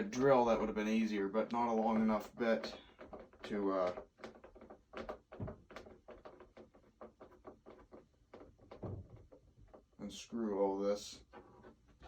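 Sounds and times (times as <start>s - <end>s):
dull bumps: 0.1s - 10.1s.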